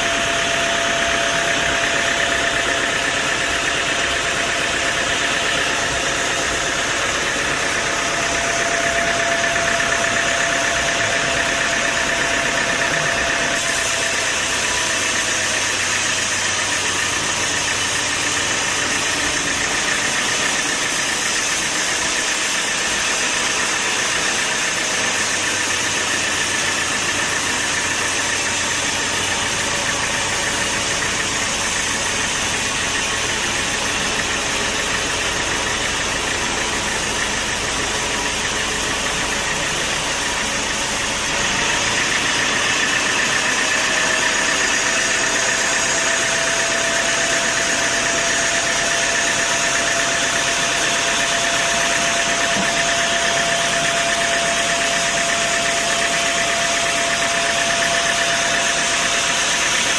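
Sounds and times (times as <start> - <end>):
faint mechanical whine: 0.0 - 59.9
sawmill machinery running: 0.0 - 59.9.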